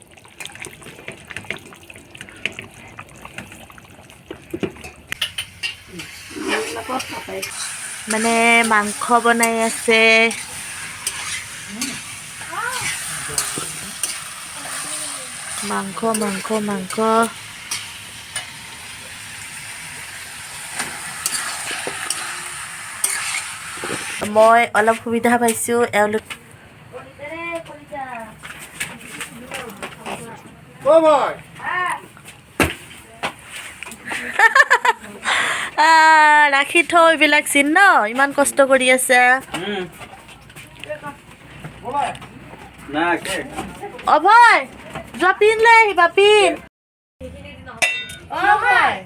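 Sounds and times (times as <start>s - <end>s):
water splashing and trickling: 0.0s - 24.2s
meat sizzling in a pan: 5.2s - 24.3s.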